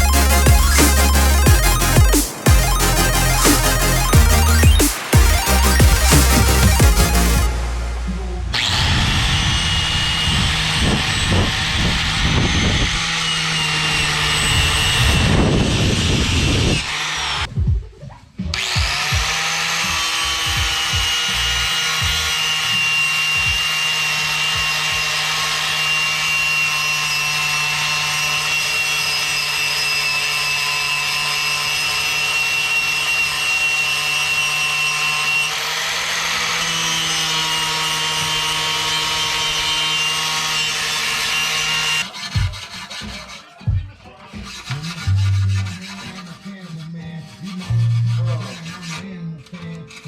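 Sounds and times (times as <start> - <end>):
power tool polishing metal: 8.6 - 17.5, 18.6 - 43.5.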